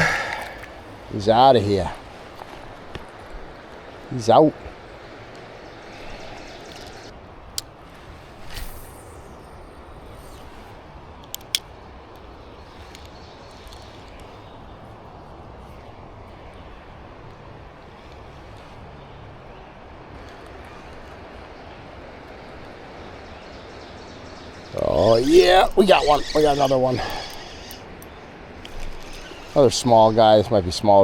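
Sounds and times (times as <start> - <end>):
river current rushing: 0.0 - 31.0
sharp clicks: 5.1 - 14.5, 25.0 - 30.1.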